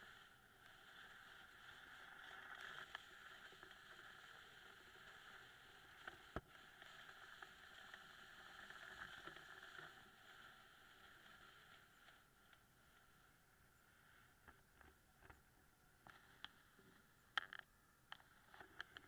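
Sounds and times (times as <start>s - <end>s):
faint steady hiss: 0.0s - 19.0s.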